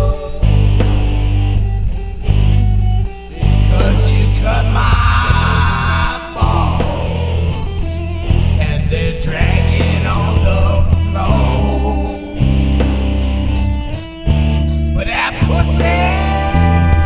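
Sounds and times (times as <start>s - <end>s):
man singing: 0.0s - 0.6s, 3.4s - 12.5s, 14.9s - 17.0s
bending guitar notes: 0.0s - 17.0s
blues band playing: 0.0s - 17.0s
loud bass line: 0.0s - 17.0s.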